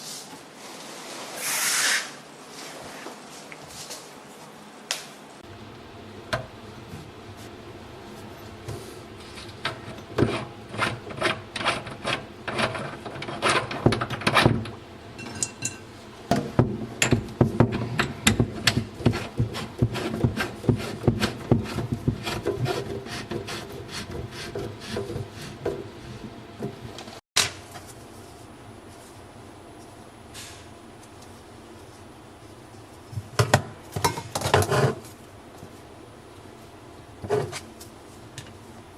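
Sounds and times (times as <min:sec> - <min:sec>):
tools knocking and scraping: 0:08.3 - 0:27.2, 0:33.2 - 0:35.1, 0:37.2 - 0:37.7.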